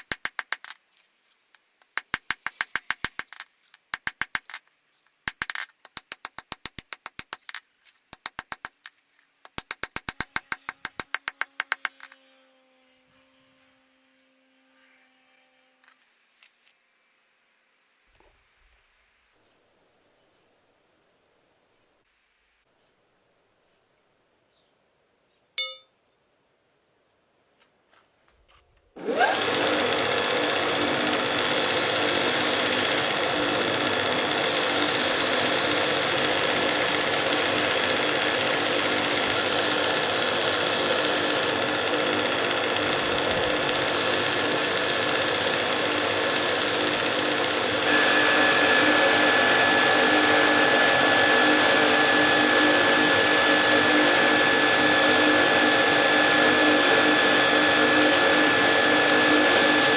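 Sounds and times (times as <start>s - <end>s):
electric power tool running: 29.0s - 59.9s.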